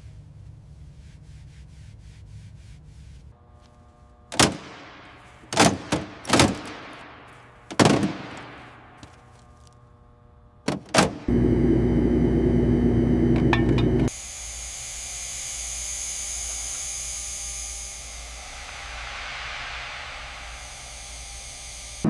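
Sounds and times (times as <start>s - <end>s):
loud steady hiss: 14.1s - 22.0s
low rumble: 18.2s - 21.8s.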